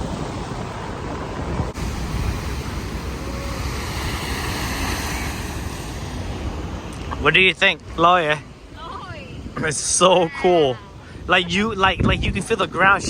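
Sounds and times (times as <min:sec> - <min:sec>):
heavy surf pounding rocky shore: 0:00.0 - 0:10.0
wind on microphone: 0:00.0 - 0:13.0.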